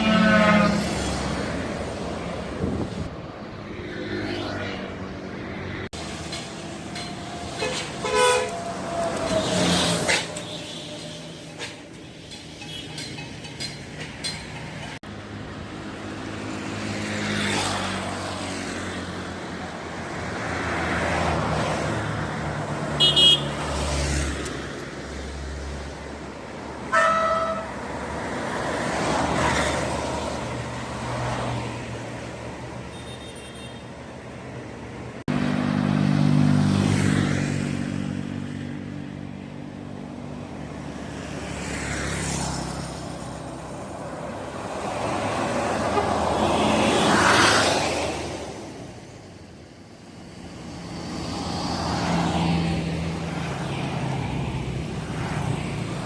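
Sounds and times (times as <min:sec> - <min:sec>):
bus horn toots: 0:00.0 - 0:01.2, 0:07.5 - 0:11.8, 0:23.0 - 0:23.6, 0:26.9 - 0:27.9, 0:45.7 - 0:46.6
buses passing: 0:00.0 - 0:56.0.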